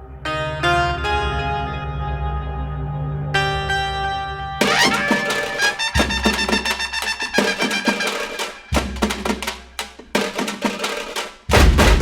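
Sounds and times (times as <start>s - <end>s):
percussion strokes: 4.6s - 12.0s.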